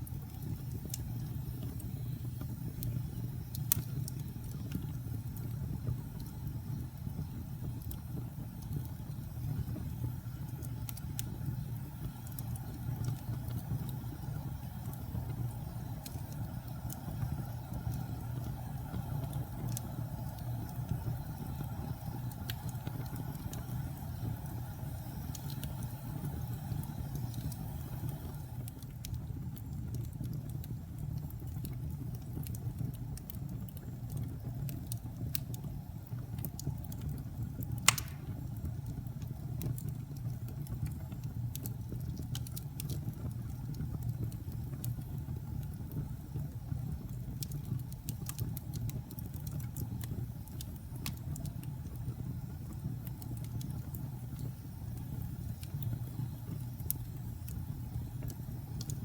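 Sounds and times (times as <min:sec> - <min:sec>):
low rumble of flames: 0:00.0 - 0:59.0
small fire crackles: 0:00.0 - 0:59.0
sharp wood pop: 0:37.8 - 0:38.4.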